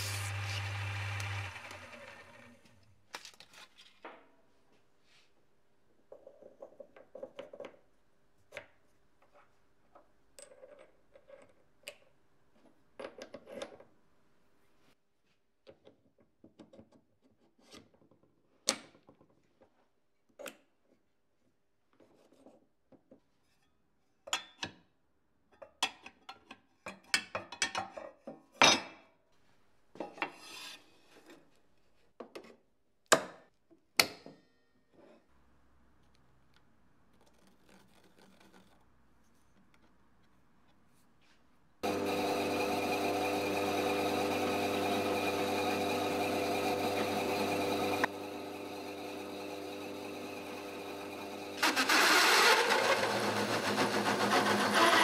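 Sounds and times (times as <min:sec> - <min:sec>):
scraping and rubbing: 0:37.1 - 0:41.5.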